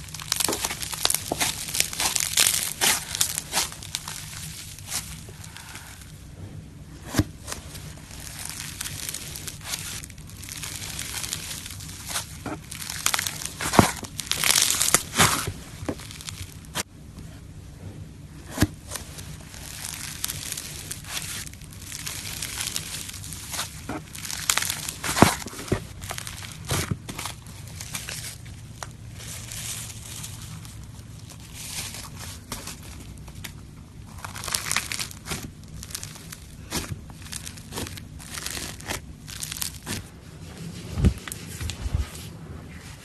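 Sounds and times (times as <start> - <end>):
slime crackling and popping: 0.0 - 6.2, 7.0 - 16.9, 18.5 - 40.2.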